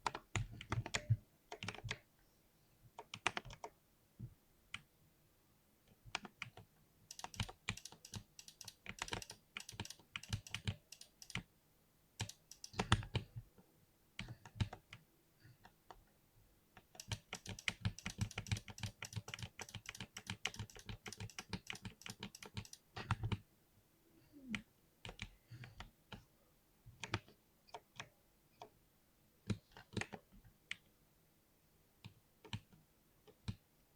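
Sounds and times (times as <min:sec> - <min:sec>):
mechanical keyboard typing: 0:00.0 - 0:02.0, 0:03.0 - 0:03.7, 0:06.1 - 0:11.5, 0:12.2 - 0:13.2, 0:16.8 - 0:23.4.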